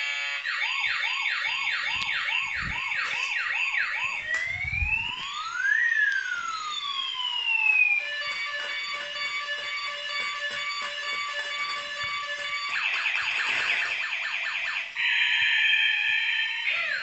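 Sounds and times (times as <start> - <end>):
toy police siren: 0.0 - 17.0
steady electronic tone: 8.0 - 12.8.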